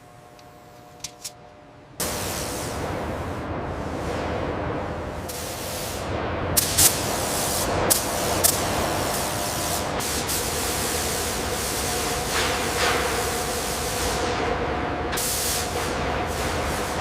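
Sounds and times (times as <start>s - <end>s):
steady hissing noise: 2.0s - 17.0s.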